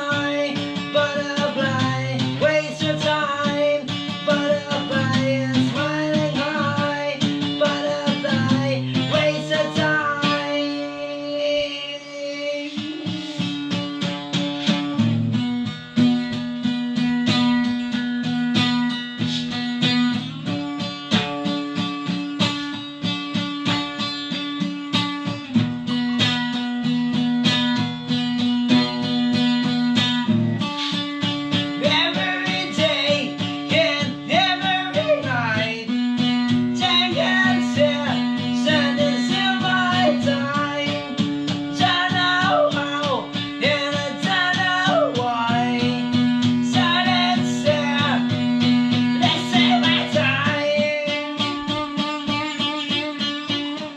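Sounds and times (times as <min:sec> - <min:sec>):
acoustic guitar picked riff: 0:00.0 - 0:53.9.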